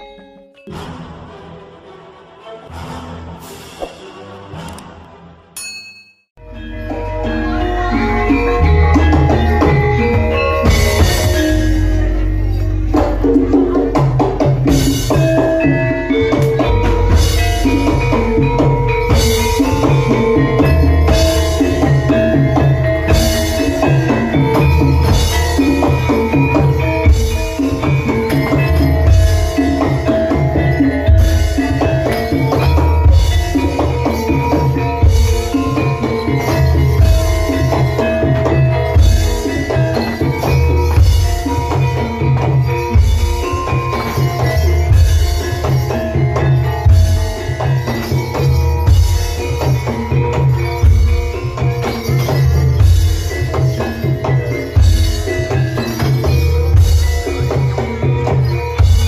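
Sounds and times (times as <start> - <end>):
ringing metallophone tones: 0.0 - 1.1, 5.6 - 59.0
struck metal-keyed instruments: 4.1 - 59.0
hand drums: 6.4 - 59.0.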